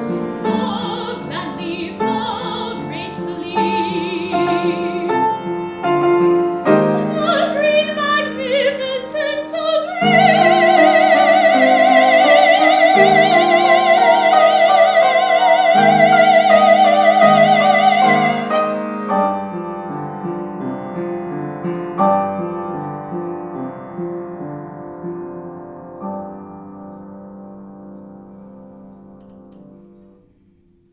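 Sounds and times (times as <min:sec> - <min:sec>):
woman singing classically: 0:00.0 - 0:05.2, 0:06.8 - 0:18.6
piano accompaniment: 0:00.0 - 0:30.9.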